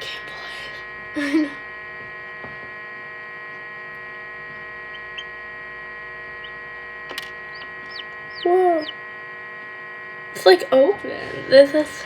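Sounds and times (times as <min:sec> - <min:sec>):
incubator electrical hum: 0:00.0 - 0:12.0
chick peeps: 0:07.5 - 0:09.0.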